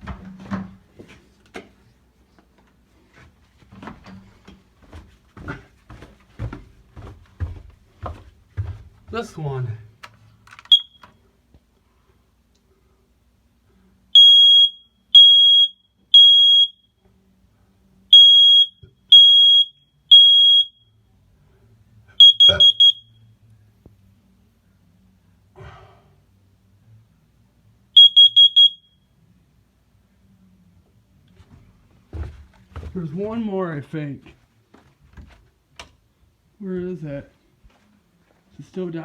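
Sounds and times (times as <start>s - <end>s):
smoke alarm beeping: 10.6s - 11.2s, 14.2s - 17.0s, 18.1s - 21.0s, 22.2s - 23.3s, 28.0s - 29.1s.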